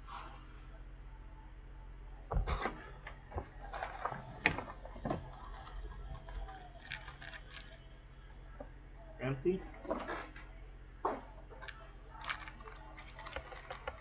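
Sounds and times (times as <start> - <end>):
plastic crinkling: 3.4 - 7.9, 11.6 - 14.0.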